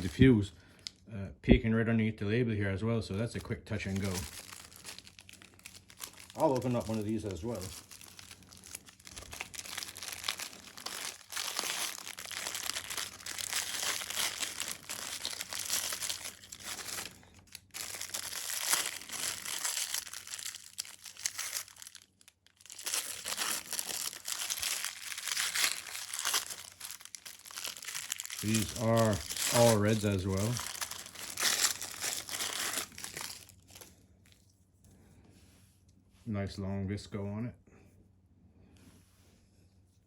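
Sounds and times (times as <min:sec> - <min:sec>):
paper tearing and crinkling: 0:00.0 - 0:00.3, 0:03.8 - 0:33.9.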